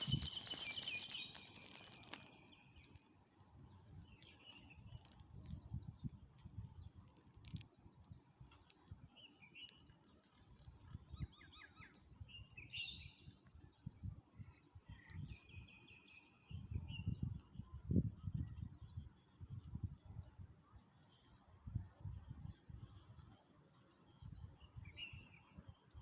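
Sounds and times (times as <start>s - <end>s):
wind rumble on microphone: 0.0s - 2.9s, 3.5s - 9.2s, 10.5s - 15.8s, 16.4s - 20.7s, 21.4s - 23.4s, 24.2s - 26.0s
small birds chirping: 0.0s - 19.5s.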